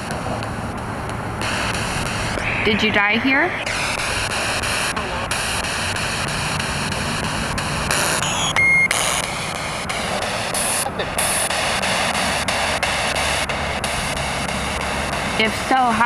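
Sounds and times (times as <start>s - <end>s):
radio static hiss: 0.0s - 16.0s
high beep: 1.7s - 7.3s, 7.9s - 12.2s.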